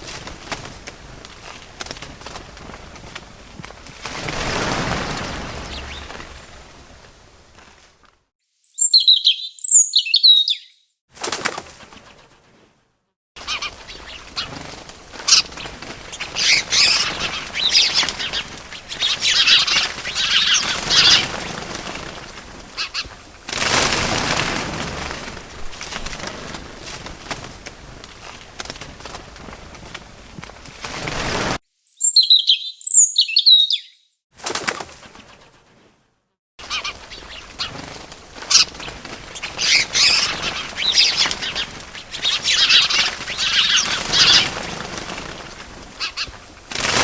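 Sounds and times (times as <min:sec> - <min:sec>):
fluttering wings: 0:00.0 - 0:08.2, 0:11.1 - 0:12.8, 0:13.4 - 0:31.6, 0:34.4 - 0:47.0
small birds chirping: 0:04.5 - 0:06.7, 0:08.5 - 0:10.9, 0:13.4 - 0:23.2, 0:31.7 - 0:34.1, 0:36.6 - 0:46.5.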